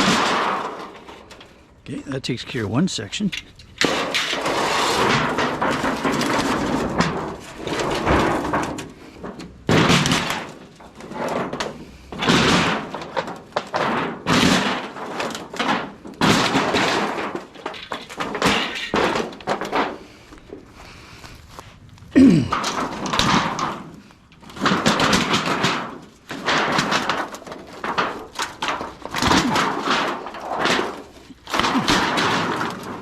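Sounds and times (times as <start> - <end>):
sheet metal bangs and thumps: 0.0 - 1.5, 3.8 - 20.1, 22.2 - 33.0
sheet metal scraping: 3.8 - 20.3.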